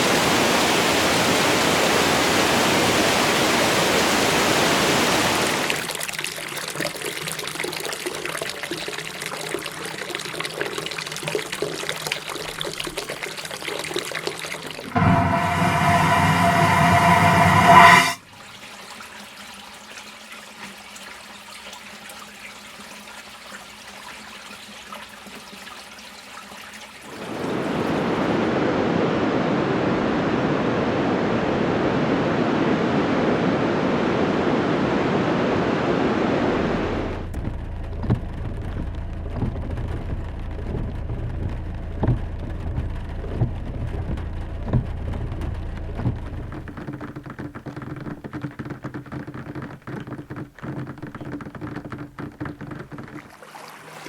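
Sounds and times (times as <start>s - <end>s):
loud rush of water: 0.0s - 5.9s, 27.1s - 37.2s
low rumble: 15.0s - 18.2s, 36.5s - 46.7s
faint water wash: 52.5s - 54.0s.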